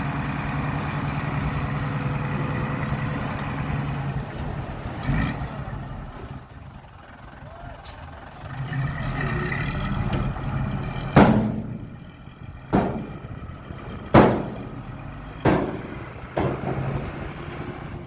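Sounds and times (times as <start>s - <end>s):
diesel engine running: 0.0s - 18.0s
sharp bangs: 11.1s - 12.0s, 12.7s - 13.3s, 14.0s - 14.8s, 15.4s - 17.1s.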